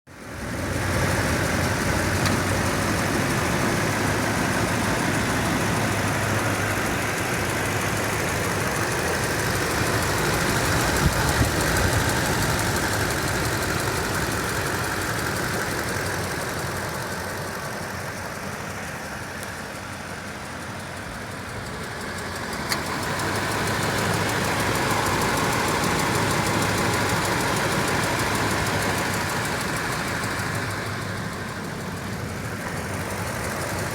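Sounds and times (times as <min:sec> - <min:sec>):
engine running with ticking: 0:00.1 - 0:33.9.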